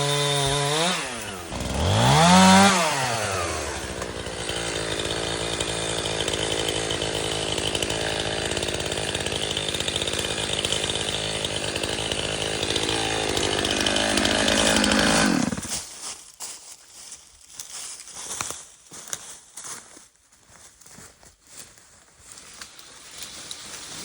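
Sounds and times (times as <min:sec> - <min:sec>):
chainsaw running: 0:00.0 - 0:15.9, 0:22.5 - 0:24.0.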